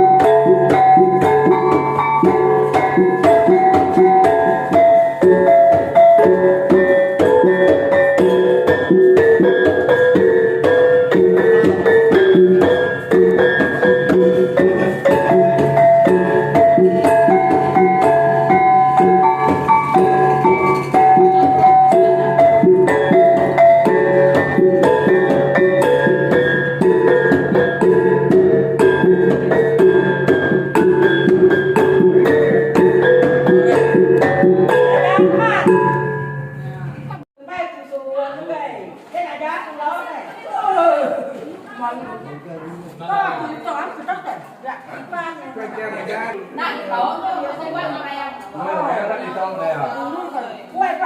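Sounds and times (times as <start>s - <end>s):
tuned gongs struck melodically: 0.0s - 37.2s.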